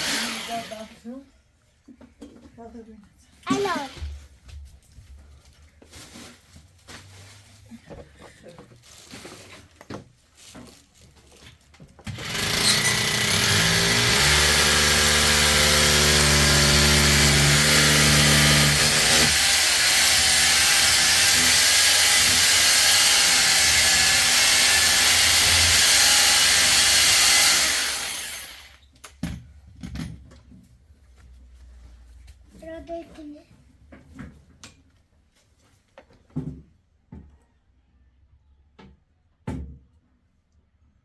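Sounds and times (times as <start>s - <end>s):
electric power tool running: 0.0s - 1.0s, 3.5s - 4.2s, 12.1s - 28.8s.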